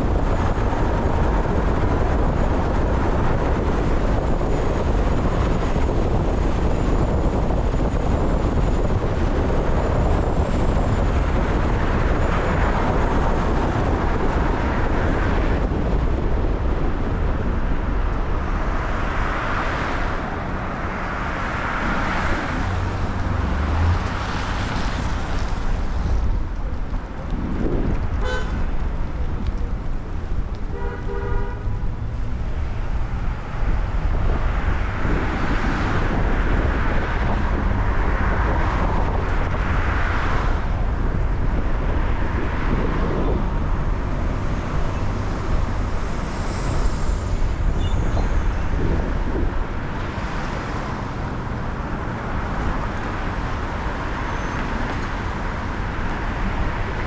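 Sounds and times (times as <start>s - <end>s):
traffic rumble: 0.0s - 57.0s
car horn honking: 28.2s - 28.6s, 30.7s - 31.8s.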